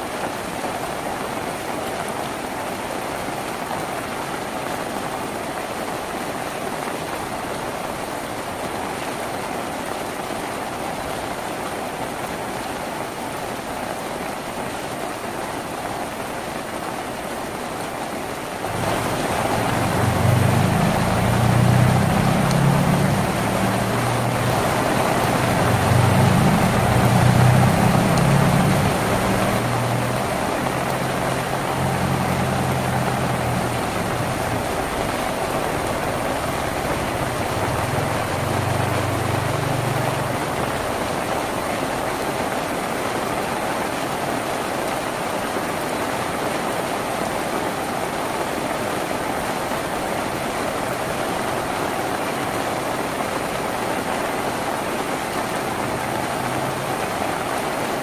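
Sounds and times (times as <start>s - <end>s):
rain on a tin roof: 0.0s - 58.0s
low engine-like hum: 18.7s - 41.1s.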